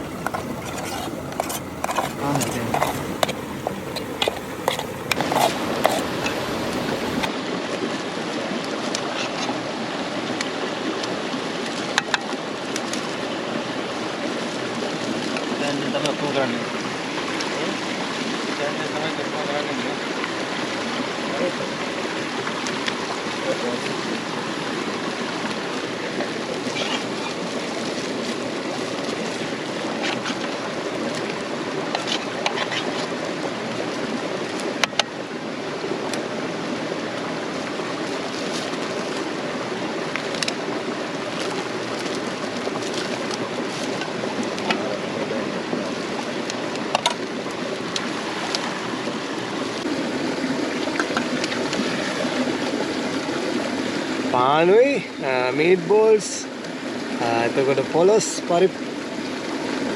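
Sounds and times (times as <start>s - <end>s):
waterfall stream rushing: 0.0s - 7.8s, 35.1s - 59.9s.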